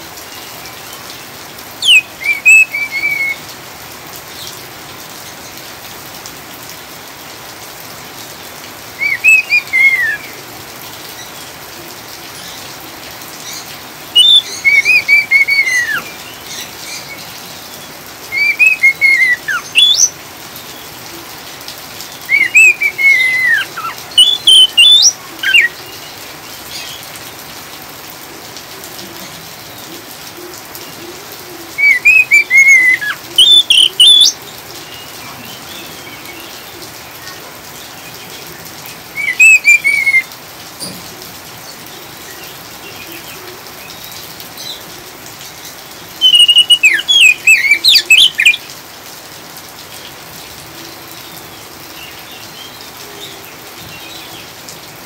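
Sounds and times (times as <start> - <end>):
falling rain hiss: 0.0 - 55.0
bird chattering calls: 1.8 - 3.3, 14.2 - 16.0, 22.3 - 25.8, 31.8 - 34.4, 39.2 - 40.2, 46.2 - 48.7.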